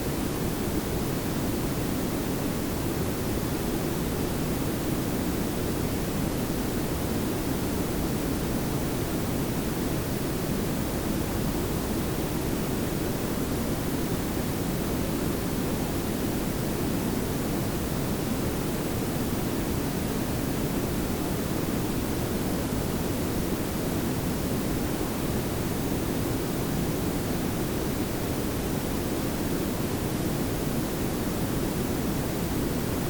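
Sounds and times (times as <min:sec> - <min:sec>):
steady noise hiss: 0:00.0 - 0:33.0.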